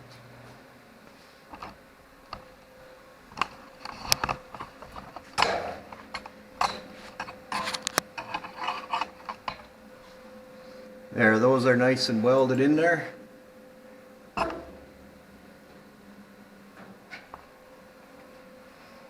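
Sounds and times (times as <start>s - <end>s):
low hum: 0.0s - 19.0s
tools and sheet metal clattering: 3.4s - 9.6s.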